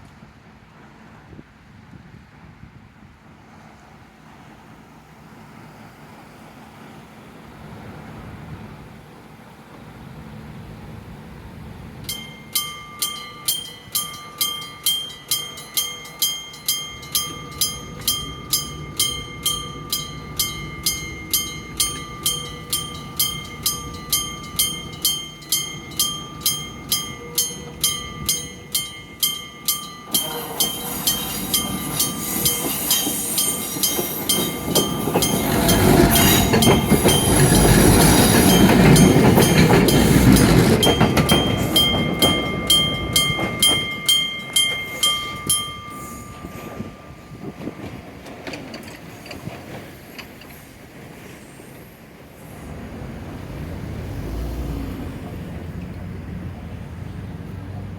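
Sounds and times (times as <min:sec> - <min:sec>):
electric train passing: 0:05.4 - 0:57.9
level-crossing warning bell ringing: 0:12.0 - 0:48.1
train wheels clattering on rails: 0:12.0 - 0:56.7.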